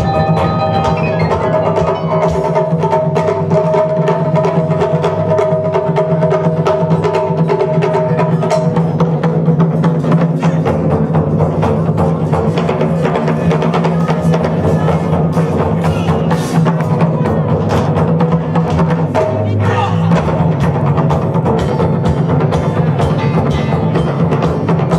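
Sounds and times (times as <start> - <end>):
electric bass notes: 0.0 - 2.6
held keyboard notes: 0.0 - 2.8
drum kit beat: 0.0 - 24.9
taiko drums: 0.0 - 24.9.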